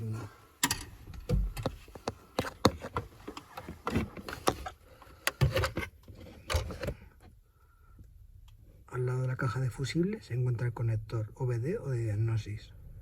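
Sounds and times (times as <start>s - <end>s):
handling clicks and knocks: 0.6s - 6.9s.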